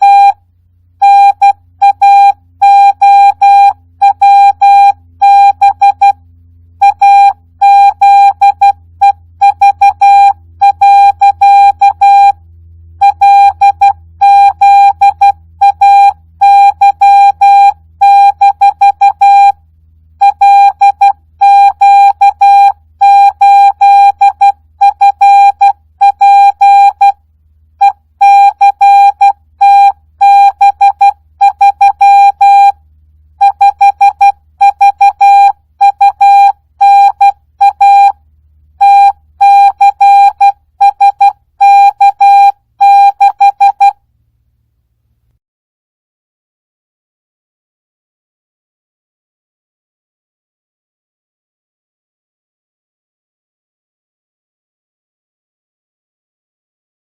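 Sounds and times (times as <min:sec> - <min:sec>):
morse code beeps: 0:00.0 - 0:00.4, 0:01.0 - 0:06.2, 0:06.8 - 0:12.4, 0:13.0 - 0:19.6, 0:20.2 - 0:27.2, 0:27.8 - 0:32.8, 0:33.4 - 0:38.2, 0:38.8 - 0:44.0.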